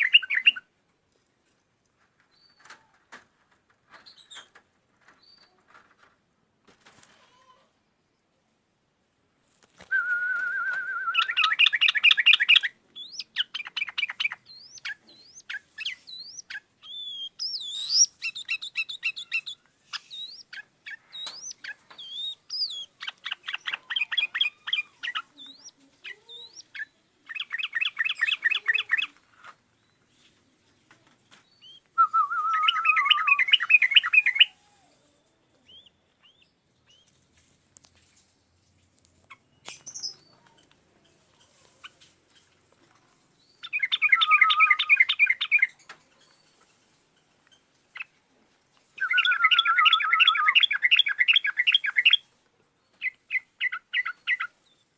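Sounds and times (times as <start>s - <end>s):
bird song trills and whistles: 0.0s - 0.7s, 9.9s - 29.1s, 31.4s - 34.6s, 39.3s - 40.4s, 43.4s - 46.6s, 49.0s - 52.3s, 53.0s - 54.8s.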